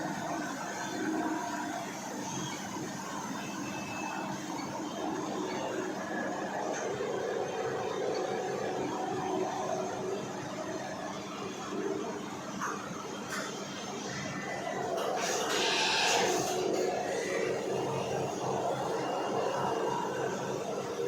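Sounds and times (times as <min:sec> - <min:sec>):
machine whirring: 0:00.0 - 0:21.0.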